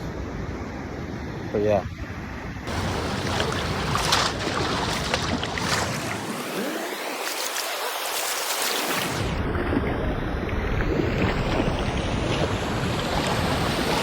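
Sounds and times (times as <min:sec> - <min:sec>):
ocean surf breaking: 0:02.7 - 0:09.5, 0:11.4 - 0:14.0.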